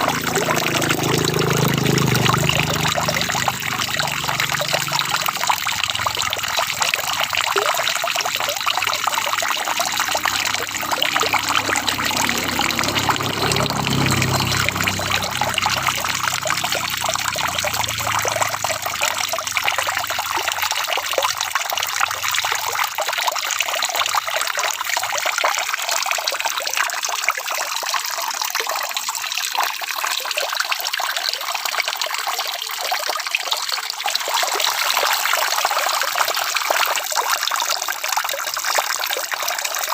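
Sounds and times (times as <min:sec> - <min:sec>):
low rumble: 0:00.0 - 0:19.9
rain pattering: 0:00.0 - 0:22.8.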